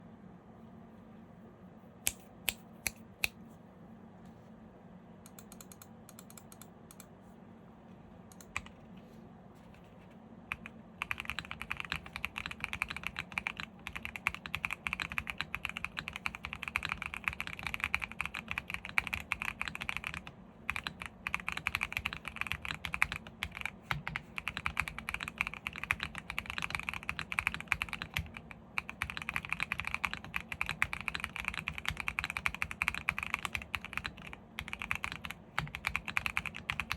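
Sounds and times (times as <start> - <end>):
mechanical keyboard typing: 5.3 - 7.1, 8.3 - 8.8, 10.5 - 36.9.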